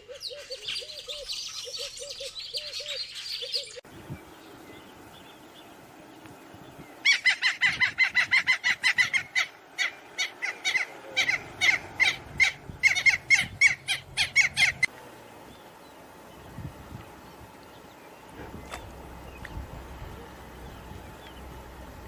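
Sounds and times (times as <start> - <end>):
bird calling harsh notes: 6.9 - 14.9.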